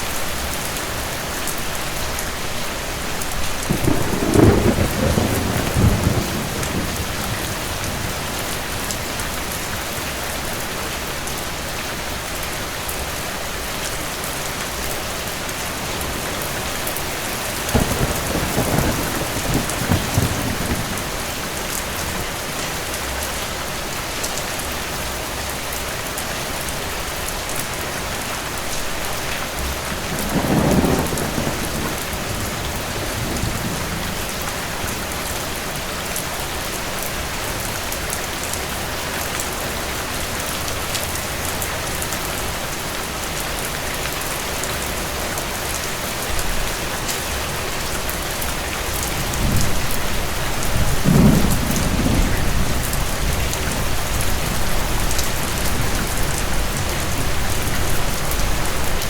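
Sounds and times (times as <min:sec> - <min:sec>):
steady rain falling: 0:00.0 - 0:59.0
distant thunder rumbling: 0:03.7 - 0:09.4, 0:17.3 - 0:22.2, 0:29.8 - 0:35.2, 0:49.0 - 0:59.0.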